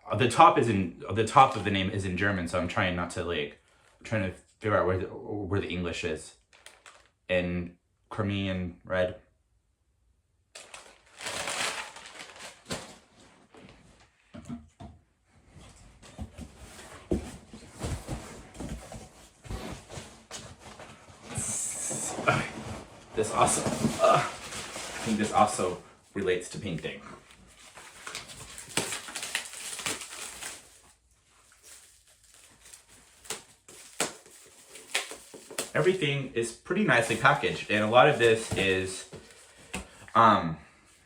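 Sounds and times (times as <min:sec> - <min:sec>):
paper packaging rustling: 0:06.5 - 0:07.2, 0:10.6 - 0:14.1, 0:16.5 - 0:36.2, 0:36.9 - 0:40.0.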